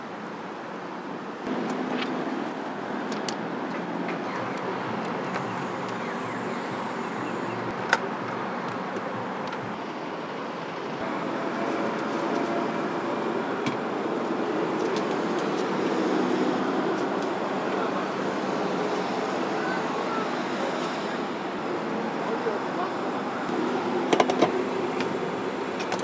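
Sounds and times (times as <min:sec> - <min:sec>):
traffic noise: 0:00.0 - 0:26.0.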